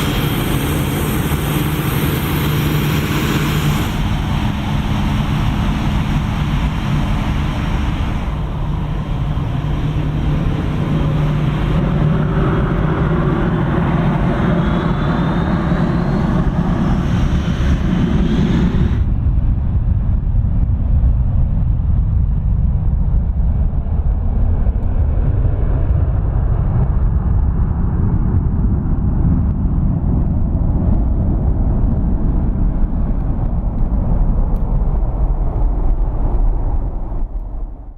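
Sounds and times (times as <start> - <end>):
low engine hum: 0.0 - 37.9.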